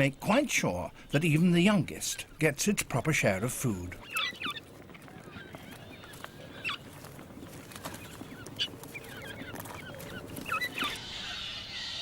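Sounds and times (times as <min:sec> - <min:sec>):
chicks squeaky begging calls: 0:04.0 - 0:12.0.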